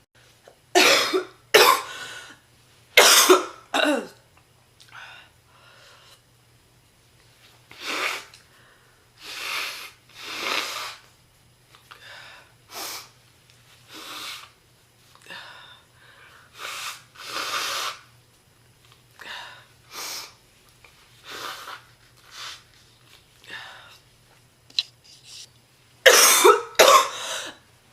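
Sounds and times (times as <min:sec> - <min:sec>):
woman coughing: 0:00.8 - 0:01.9, 0:03.0 - 0:04.2, 0:26.0 - 0:27.6
woman breathing: 0:01.9 - 0:02.4, 0:04.9 - 0:06.3, 0:08.4 - 0:11.0, 0:11.9 - 0:13.1, 0:15.2 - 0:17.5, 0:19.2 - 0:20.4, 0:23.4 - 0:24.0, 0:27.1 - 0:27.6.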